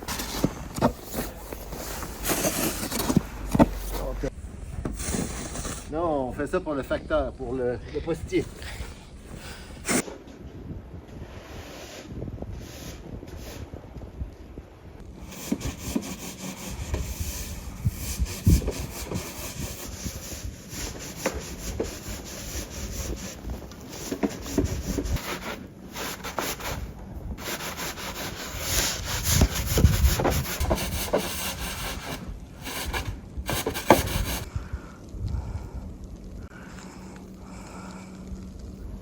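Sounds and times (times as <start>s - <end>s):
snow shovel scraping snow: 0.0s - 4.3s, 4.9s - 5.9s, 15.2s - 34.5s.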